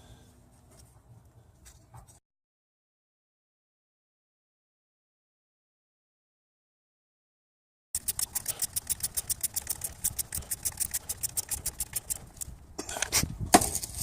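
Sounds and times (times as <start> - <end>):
ratchet wrench clicking: 8.0 - 12.5.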